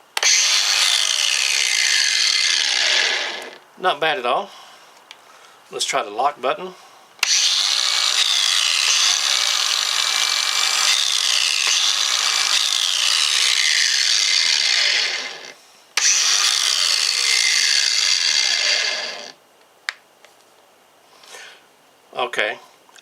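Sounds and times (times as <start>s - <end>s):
angle grinder running: 0.2s - 3.6s, 7.2s - 19.4s.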